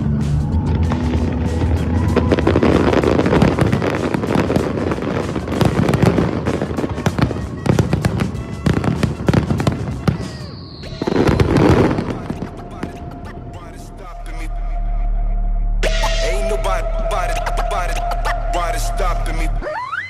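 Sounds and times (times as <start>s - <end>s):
fireworks bangs and crackles: 0.0s - 13.5s
background music: 0.0s - 20.0s.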